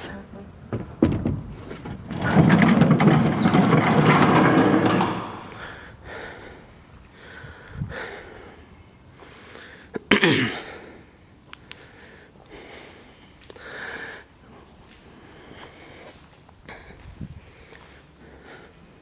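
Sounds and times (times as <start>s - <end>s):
barn doors scraping open: 0.0s - 6.0s
knocks: 0.6s - 5.8s
short falling creak: 0.7s - 5.9s.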